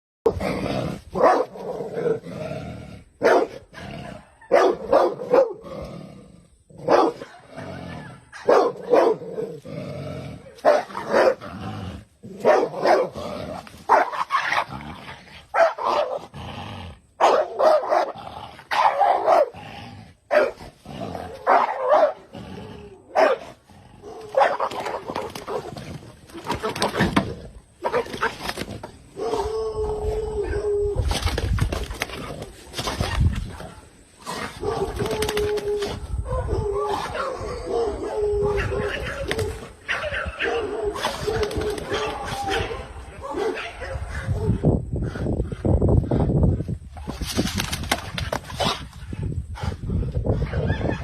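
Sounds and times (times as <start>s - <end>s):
dogs barking: 1.2s - 2.2s, 3.2s - 5.6s, 6.8s - 9.4s, 10.5s - 11.4s, 12.4s - 13.2s, 13.9s - 14.7s, 15.5s - 16.3s, 17.2s - 19.6s, 20.3s - 20.6s, 21.3s - 22.3s, 23.1s - 25.7s, 27.8s - 28.4s, 34.5s - 35.2s, 36.2s - 44.6s.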